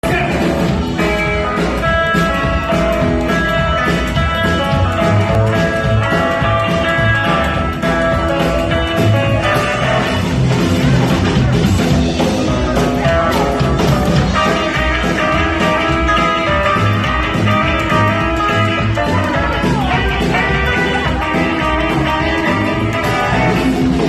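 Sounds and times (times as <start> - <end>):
electric guitar: 0.0 - 24.0
rock and roll band playing: 0.0 - 24.0.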